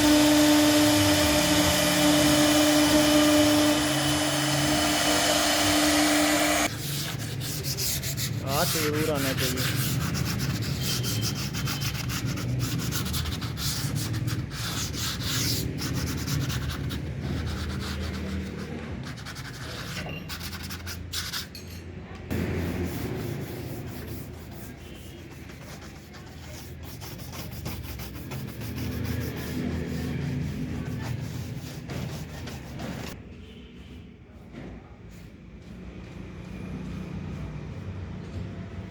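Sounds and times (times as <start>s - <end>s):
power tool scraping wood: 0.0s - 6.7s.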